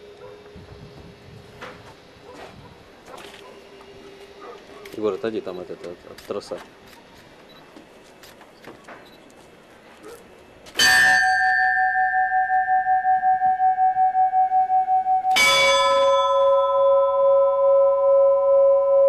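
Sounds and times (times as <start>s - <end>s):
church bells ringing: 10.8s - 19.0s.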